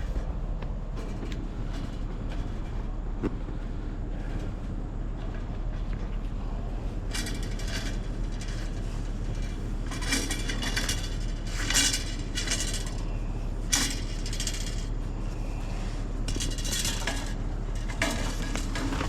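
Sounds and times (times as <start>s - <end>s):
metal scrap clanking and rattling: 7.1s - 15.0s, 16.3s - 19.0s.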